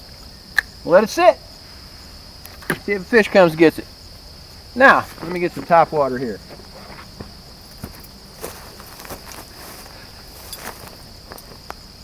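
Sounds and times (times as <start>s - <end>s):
insect chorus trilling: 0.0s - 12.0s
light clicks and rustles: 6.5s - 11.8s.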